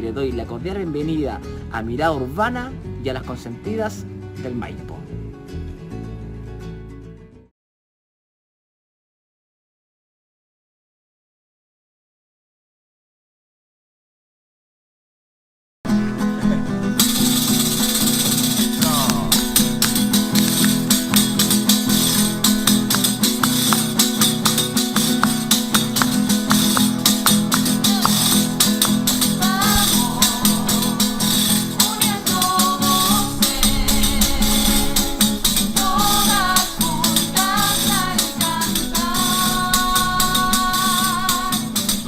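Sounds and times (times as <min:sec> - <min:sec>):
strummed guitar: 0:00.0 - 0:07.5, 0:15.9 - 0:42.0
voices singing: 0:16.2 - 0:42.0
tambourine beat: 0:17.0 - 0:42.0.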